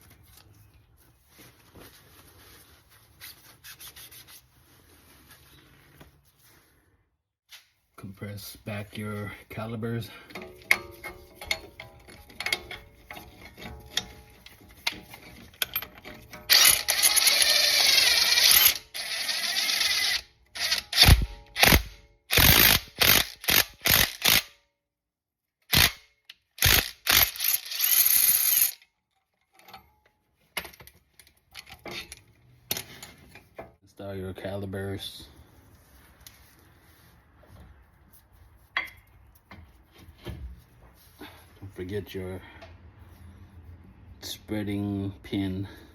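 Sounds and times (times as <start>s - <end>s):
ratchet clicking: 14.8s - 24.5s, 25.7s - 28.8s.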